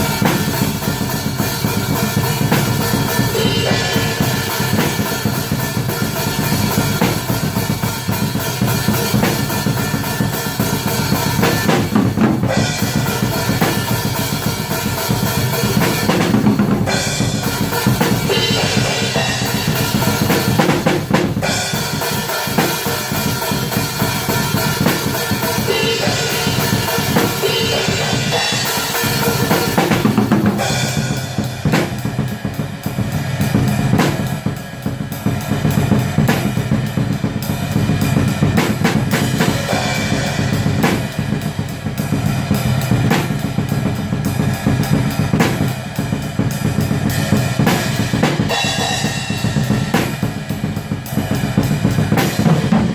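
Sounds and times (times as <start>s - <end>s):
distorted guitars: 0.0s - 45.0s
fast drumming: 0.0s - 52.9s.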